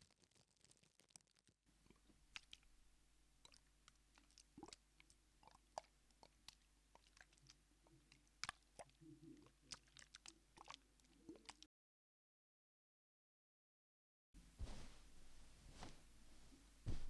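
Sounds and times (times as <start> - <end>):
small clicks and crunchy crackles: 0.0 - 2.7, 3.4 - 11.6.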